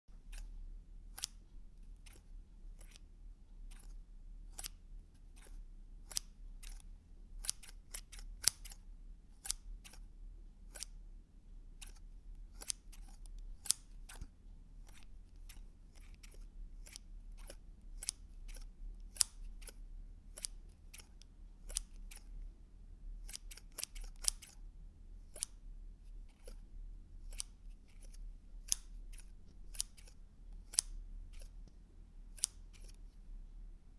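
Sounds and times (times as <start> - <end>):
scissors snipping: 0.2 - 0.5, 1.1 - 1.4, 2.0 - 3.0, 3.7 - 4.8, 5.4 - 6.8, 7.4 - 8.8, 9.4 - 10.1, 10.7 - 11.0, 11.8 - 22.3, 23.2 - 24.6, 25.3 - 25.6, 27.2 - 31.7, 32.3 - 33.0.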